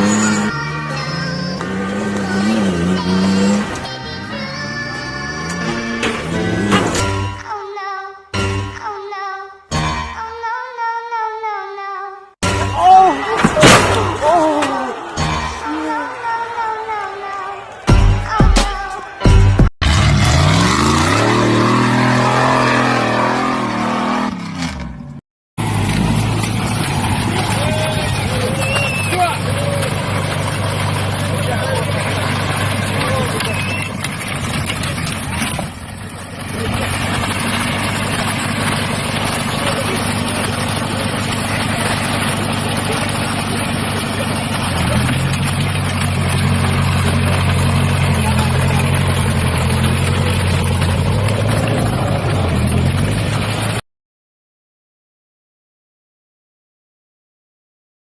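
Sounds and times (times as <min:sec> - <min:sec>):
off-road vehicle engine revving: 0:00.0 - 0:07.4, 0:19.8 - 0:53.8.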